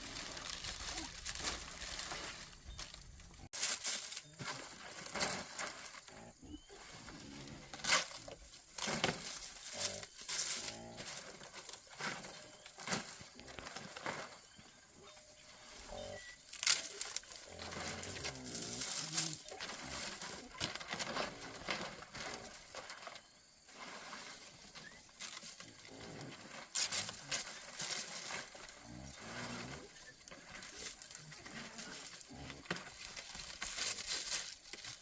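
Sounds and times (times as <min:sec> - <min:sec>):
rustling: 0:00.0 - 0:14.8, 0:15.5 - 0:35.0
farm animals calling: 0:12.3 - 0:22.9.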